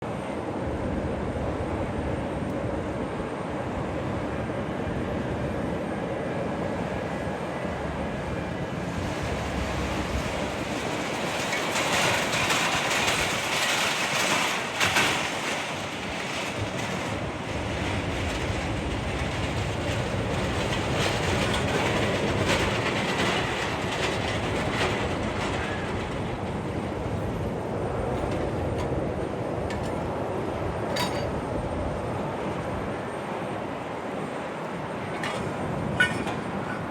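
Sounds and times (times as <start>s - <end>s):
jet aircraft rumble and hiss: 0.0s - 36.9s
ground equipment: 9.2s - 31.5s, 34.2s - 36.9s.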